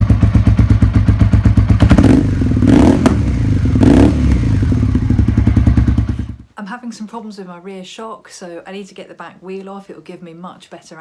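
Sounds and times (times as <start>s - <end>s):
motorcycle engine revving: 0.0s - 6.4s.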